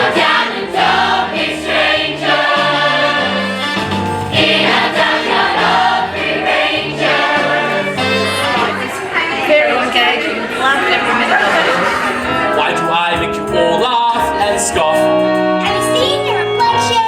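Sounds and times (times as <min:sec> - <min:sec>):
children's chorus singing: 0:00.0 - 0:03.7, 0:04.3 - 0:12.6
instrumental backing with bass line: 0:00.0 - 0:09.1, 0:10.5 - 0:17.0.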